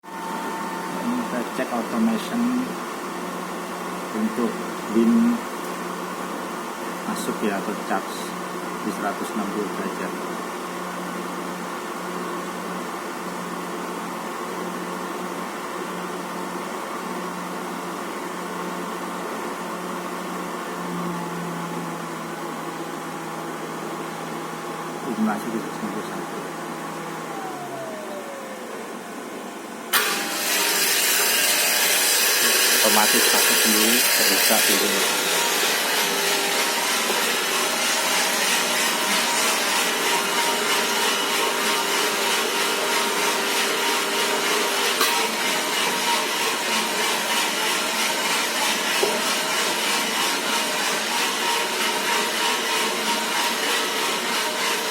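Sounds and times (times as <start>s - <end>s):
coffee roaster motor humming: 0.0s - 54.9s
steady hum: 20.8s - 30.0s
coffee beans tumbling in drum: 45.3s - 54.9s.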